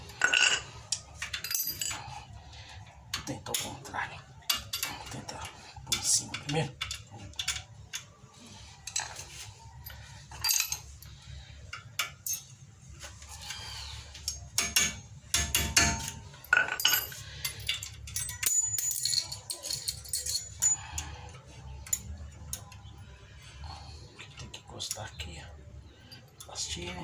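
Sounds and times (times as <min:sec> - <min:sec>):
metal spring clinking on brake caliper: 0:14.2 - 0:21.1.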